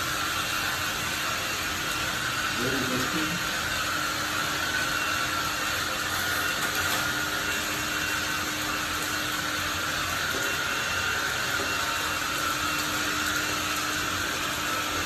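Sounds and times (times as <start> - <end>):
cordless vacuum running: 0.0 - 15.0.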